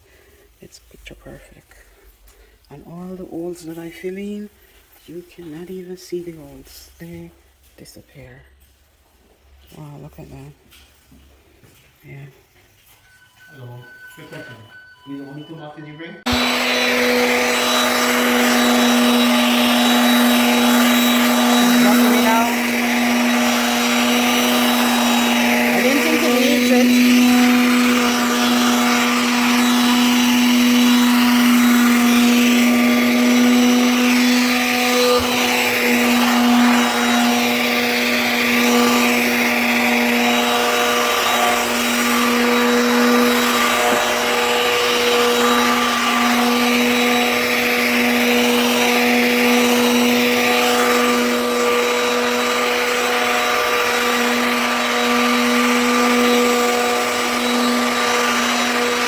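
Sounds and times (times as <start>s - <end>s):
electric sander motor whine: 13.5s - 59.0s
sanding rasp on stone: 16.3s - 59.0s.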